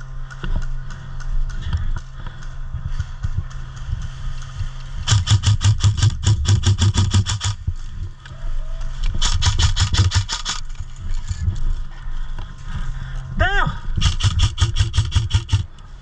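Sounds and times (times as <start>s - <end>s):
low rumble: 0.0s - 16.0s
rapid airsoft gunfire: 5.0s - 7.6s, 9.1s - 10.7s, 14.0s - 15.7s.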